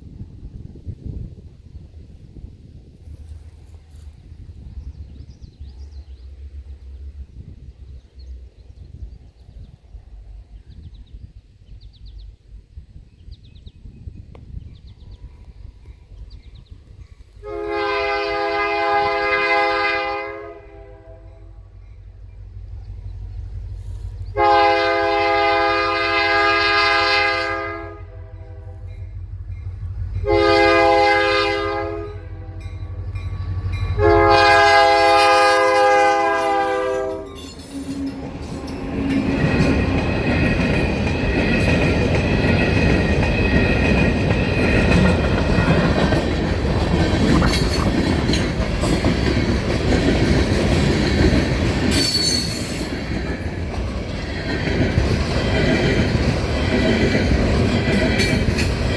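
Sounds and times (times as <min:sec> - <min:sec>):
locomotive horn blasts: 0:17.4 - 0:21.5, 0:24.3 - 0:29.0, 0:30.2 - 0:33.0, 0:33.9 - 0:38.2
train wheels clattering and squealing: 0:32.6 - 0:58.9.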